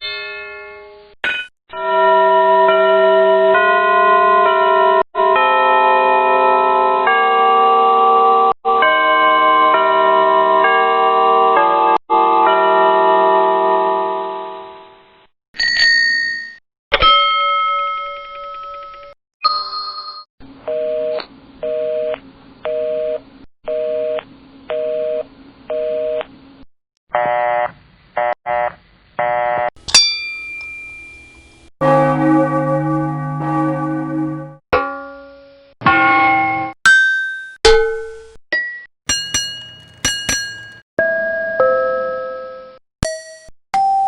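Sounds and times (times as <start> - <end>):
single struck bell dings: 29.9 - 31.2, 39.1 - 40.8
deep ringing bell tone: 31.8 - 34.6, 39.1 - 40.8
short repeated bell rings: 39.1 - 40.8.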